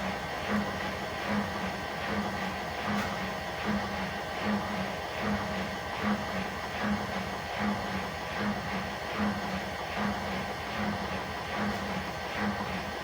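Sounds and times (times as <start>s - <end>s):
washing machine spinning: 0.0s - 13.0s.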